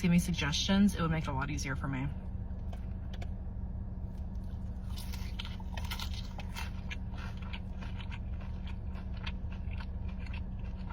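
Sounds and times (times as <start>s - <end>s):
steady low hum: 0.0s - 10.9s
chewing crunchy food: 4.0s - 10.9s.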